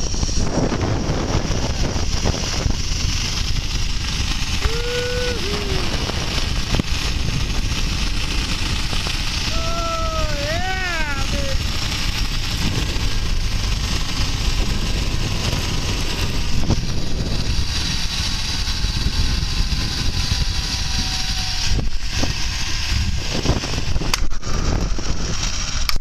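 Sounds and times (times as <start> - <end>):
faint falling whine: 0.0 - 17.6
wind on microphone: 0.0 - 26.0
zipline pulleys running on cable: 0.0 - 26.0.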